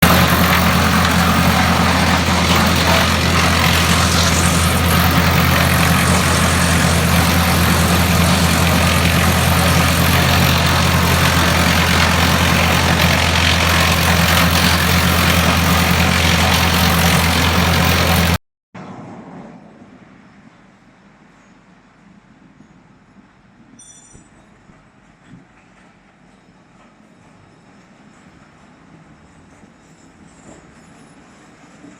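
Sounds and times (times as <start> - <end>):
wood chipper running: 0.0 - 18.4.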